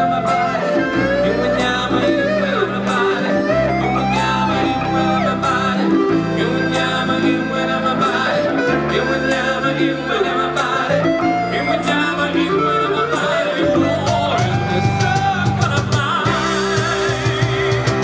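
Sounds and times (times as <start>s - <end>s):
live band playing a song: 0.0s - 18.0s.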